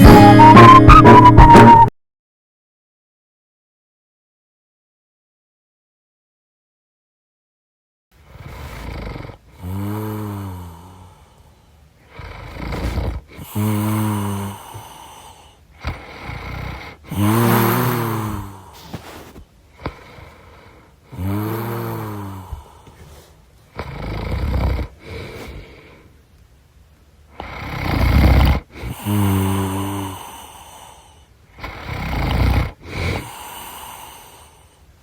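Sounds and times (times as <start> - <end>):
person snoring: 8.3 - 26.1, 27.3 - 34.8.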